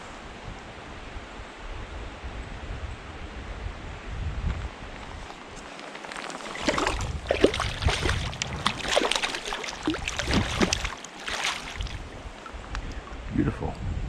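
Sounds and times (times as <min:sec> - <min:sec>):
wind rumble on microphone: 0:00.0 - 0:05.7, 0:06.4 - 0:11.0, 0:11.6 - 0:14.0
water splashing and gurgling: 0:05.2 - 0:13.4.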